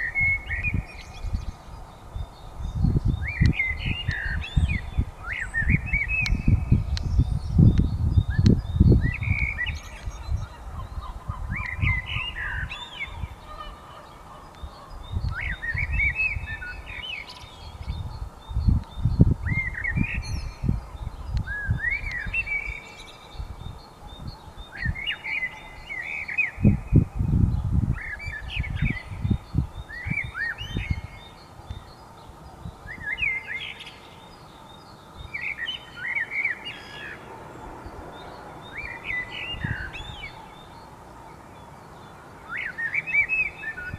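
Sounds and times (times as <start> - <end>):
low rumble on microphone: 0.0 - 13.4
small birds chirping: 0.0 - 43.9.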